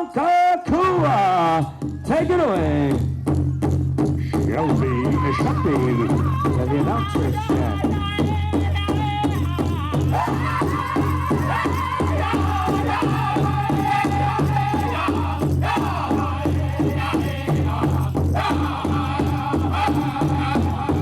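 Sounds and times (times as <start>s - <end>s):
big drum beating: 0.8s - 21.0s
singers chanting high-pitched: 4.3s - 21.0s.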